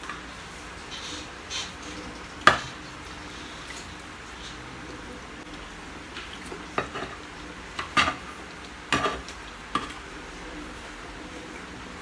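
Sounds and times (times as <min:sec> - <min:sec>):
cutlery scraping a plate: 0:00.8 - 0:04.6, 0:06.3 - 0:10.0.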